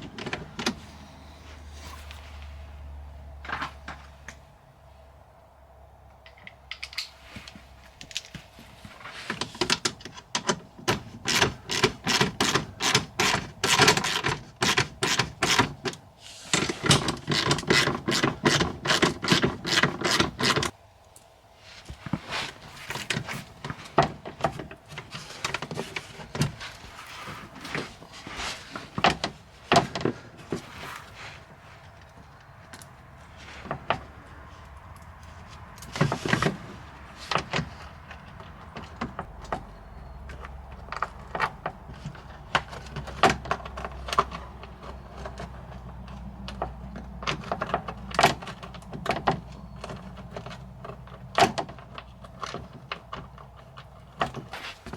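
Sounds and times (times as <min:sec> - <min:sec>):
hand tools and fasteners rattling: 0:06.2 - 0:20.8.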